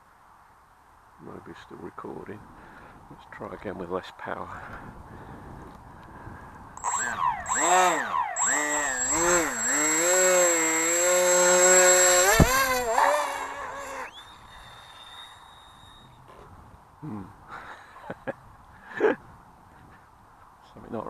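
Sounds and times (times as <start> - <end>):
thin high tone: 6.8 - 16.3
electric motor and propeller whining: 6.8 - 16.4.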